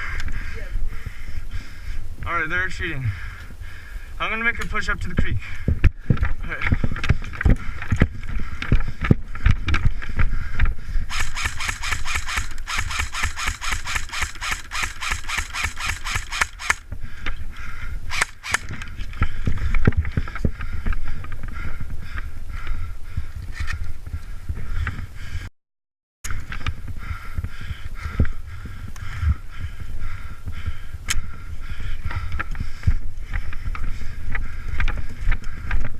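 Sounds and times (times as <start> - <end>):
fast even clatter: 11.1 - 16.8.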